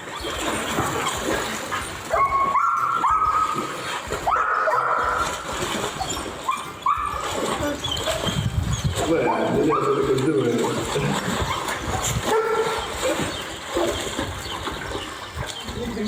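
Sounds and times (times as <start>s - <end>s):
dog whining: 4.3s - 14.0s.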